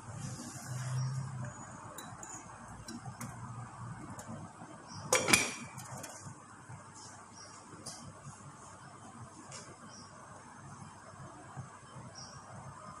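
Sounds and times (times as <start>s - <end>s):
faint steady hum: 0.0s - 13.0s
kitchenware clicks: 5.1s - 6.1s
utensil clattering on a pot: 5.1s - 6.2s.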